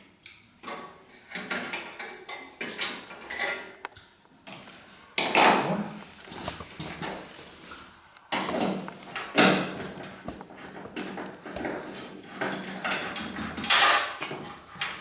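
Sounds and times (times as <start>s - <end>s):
metal tools clinking and rattling: 2.8s - 3.7s, 12.4s - 15.0s.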